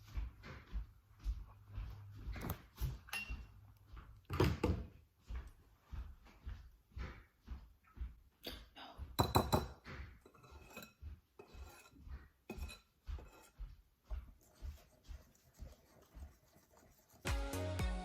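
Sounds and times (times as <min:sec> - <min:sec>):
utensil scraping and clinking bowl: 0:10.2 - 0:13.6.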